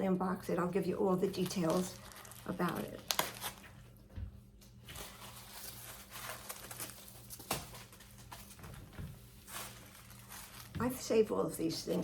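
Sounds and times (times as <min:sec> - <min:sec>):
packaging rustling and crinkling: 0:01.2 - 0:04.0, 0:04.6 - 0:11.3.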